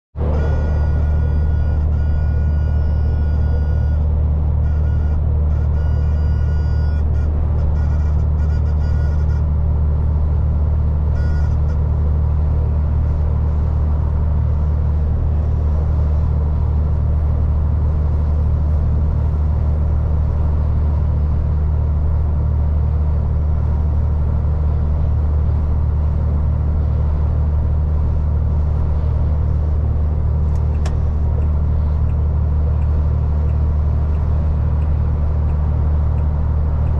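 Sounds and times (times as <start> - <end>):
lorry engine rumble: 0.1 - 36.9.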